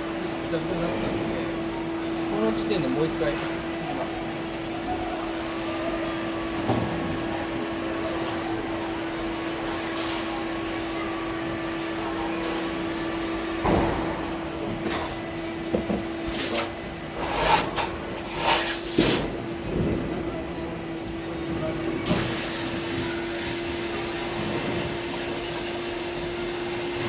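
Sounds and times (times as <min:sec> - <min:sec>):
scraping or rubbing bursts: 0:16.2 - 0:19.3.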